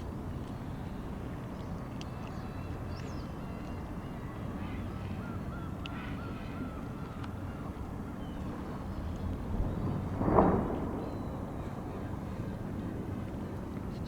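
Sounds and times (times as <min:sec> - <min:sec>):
low outdoor rumble: 0:03.9 - 0:14.0.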